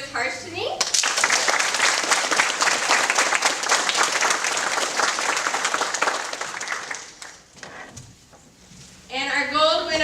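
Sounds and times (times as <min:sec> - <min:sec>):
audience clapping: 0:00.8 - 0:07.8.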